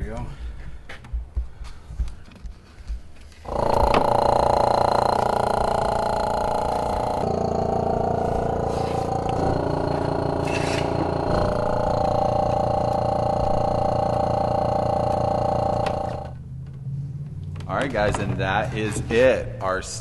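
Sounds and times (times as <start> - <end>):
power tool motor running: 3.4 - 16.4.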